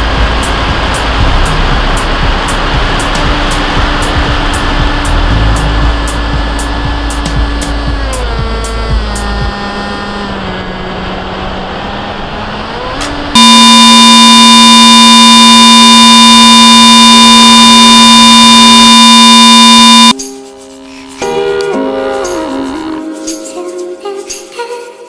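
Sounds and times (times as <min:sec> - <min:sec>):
steady noisy rush: 0:00.0 - 0:20.2
electronic buzz tone: 0:13.4 - 0:20.2.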